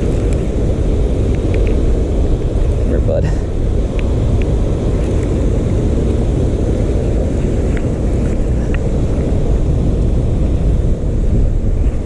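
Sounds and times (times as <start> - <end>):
faint small ticks: 0.0 - 0.5, 1.2 - 1.8, 3.9 - 5.4
river current roaring: 0.0 - 12.0.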